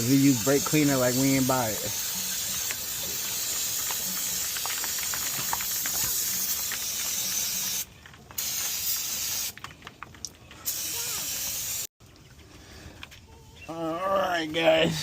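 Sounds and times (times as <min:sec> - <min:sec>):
aerosol can spraying: 0:00.0 - 0:09.6, 0:10.6 - 0:11.9.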